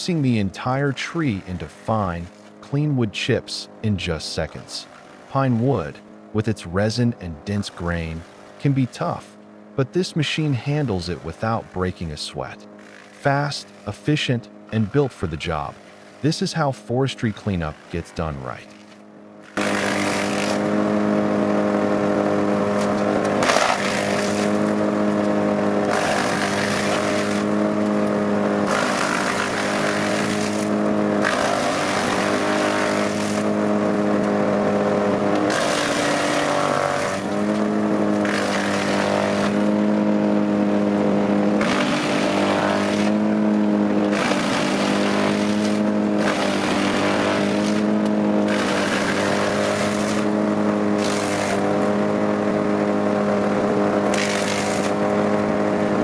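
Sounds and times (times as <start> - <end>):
wood chipper engine running: 0.0 - 56.0
grinding chipping of wood: 12.4 - 14.2, 17.4 - 21.0, 22.7 - 34.4, 35.2 - 40.8, 41.4 - 53.2, 53.9 - 55.5.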